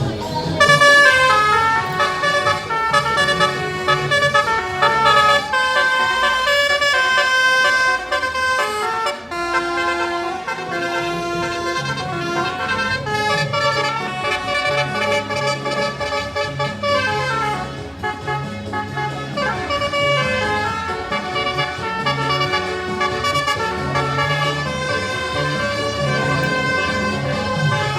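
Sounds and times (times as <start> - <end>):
multi-tone bus horn tune: 0.0 - 27.9.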